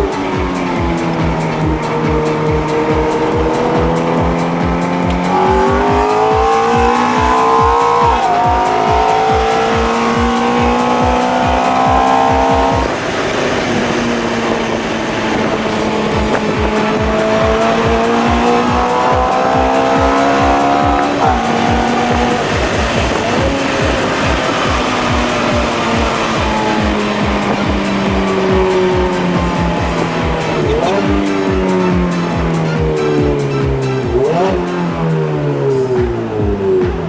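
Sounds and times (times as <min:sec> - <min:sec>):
tyre squeal: 0:00.0 - 0:35.2
car engine revving: 0:00.0 - 0:37.0
music with steady beat: 0:00.0 - 0:37.0.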